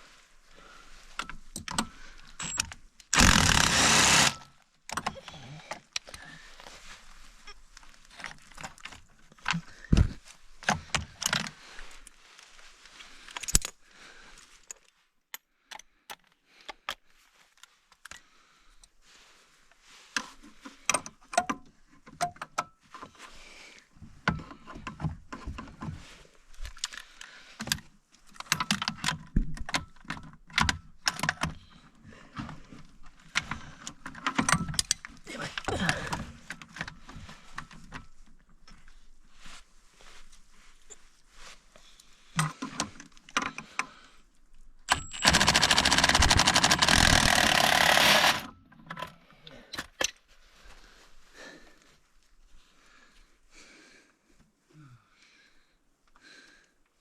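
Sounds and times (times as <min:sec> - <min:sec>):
tools and parts clinking: 0:01.2 - 0:06.2, 0:13.3 - 0:13.8, 0:33.3 - 0:38.8, 0:44.8 - 0:50.2.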